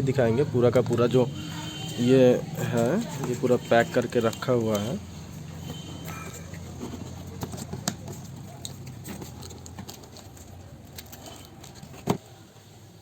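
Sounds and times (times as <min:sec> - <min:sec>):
cardboard taps and rustles: 0:05.6 - 0:12.2.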